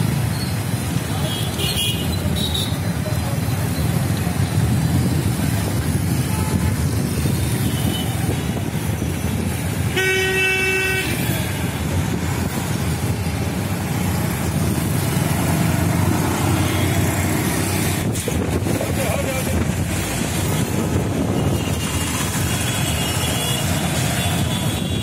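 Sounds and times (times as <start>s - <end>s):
street noise: 0.0s - 25.0s
vehicle horn: 9.9s - 11.4s.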